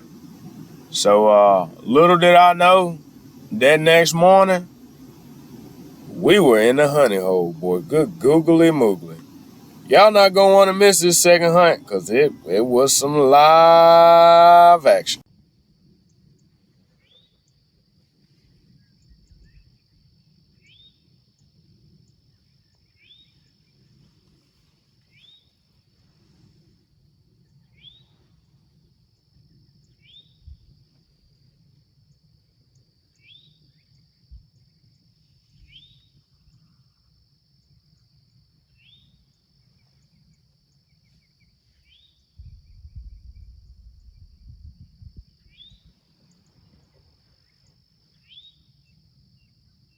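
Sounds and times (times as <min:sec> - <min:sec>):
bird rising chirp: 0:00.0 - 0:15.2
high insect drone: 0:00.0 - 0:18.0.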